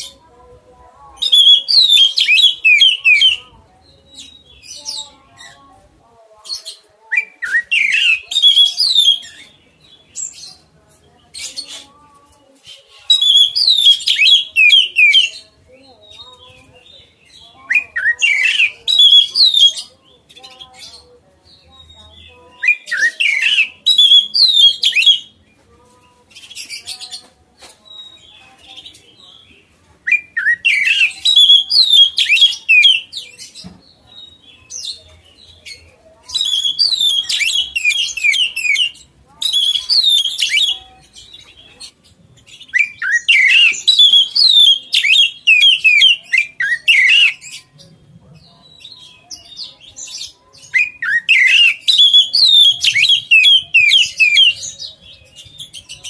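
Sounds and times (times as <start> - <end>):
bird singing whistled notes: 1.2 - 3.4, 7.2 - 10.5, 13.1 - 15.4, 16.0 - 19.9, 21.8 - 25.3, 27.9 - 33.6, 34.2 - 41.7, 42.5 - 47.6, 48.7 - 56.0.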